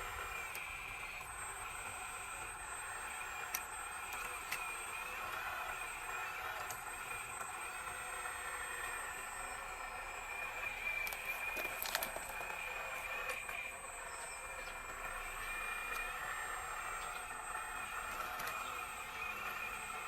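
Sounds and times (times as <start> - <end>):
electric hydraulic pump whining: 0.0 - 20.0.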